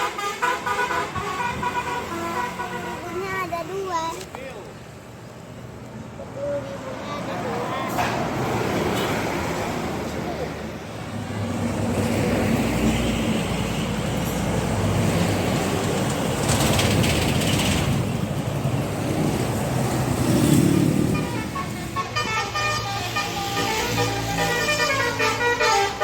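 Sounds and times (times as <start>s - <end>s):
musical bus horn: 0.0s - 3.2s, 21.0s - 26.0s
heavy vehicles passing: 0.0s - 26.0s.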